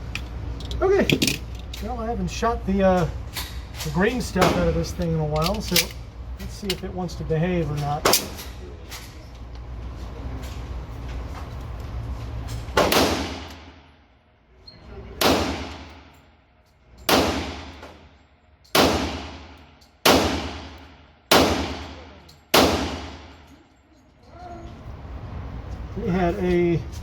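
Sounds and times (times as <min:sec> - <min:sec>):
pistol shots in reverberant room: 0:12.8 - 0:14.0, 0:15.2 - 0:16.4, 0:17.0 - 0:23.5.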